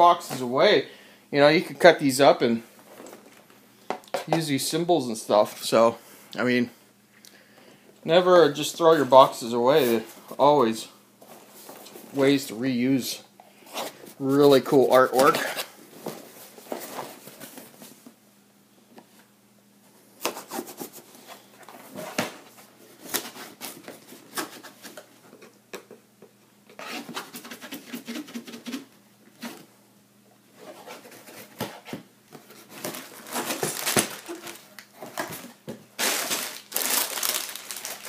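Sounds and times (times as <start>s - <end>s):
plastic bag crinkling: 32.8s - 38.0s.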